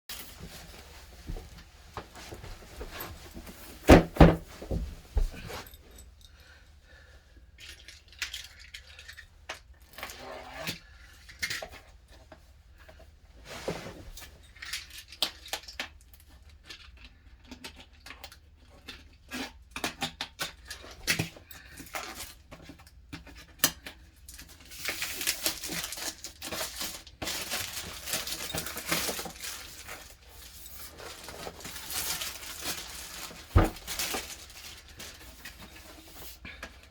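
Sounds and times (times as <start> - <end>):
packaging rustling: 24.5 - 36.4.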